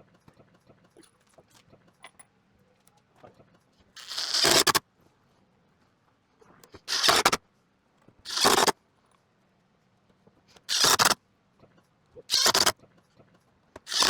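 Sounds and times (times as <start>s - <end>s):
short rasping scrapes: 4.0s - 4.8s, 6.8s - 7.4s, 8.3s - 8.7s, 10.7s - 11.2s, 12.3s - 12.7s.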